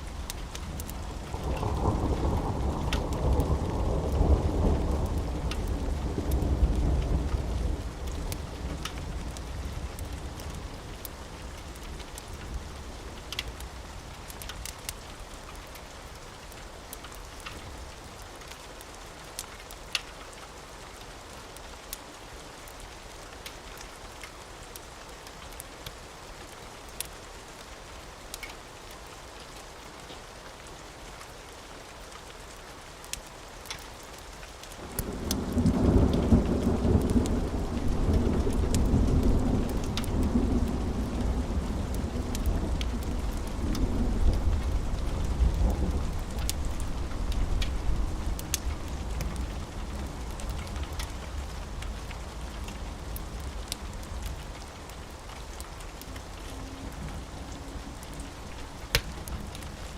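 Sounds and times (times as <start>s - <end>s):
wood fire crackling: 0.0s - 26.0s, 32.1s - 59.9s
steady rain: 0.0s - 59.9s
low thunder rumble: 0.2s - 10.5s, 34.8s - 54.5s.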